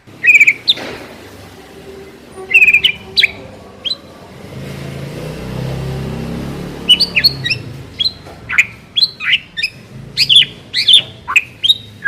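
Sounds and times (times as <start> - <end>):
low engine hum: 0.0 - 12.0
bird singing whistled notes: 0.2 - 0.8, 2.4 - 4.1, 6.8 - 12.0.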